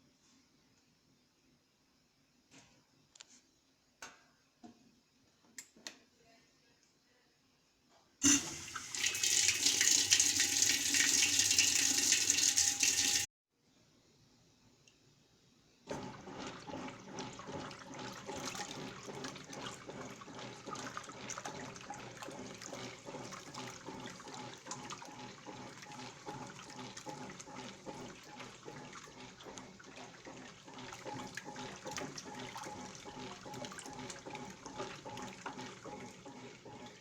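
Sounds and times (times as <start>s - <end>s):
water rushing into washing machine: 8.2s - 13.3s, 15.9s - 37.0s.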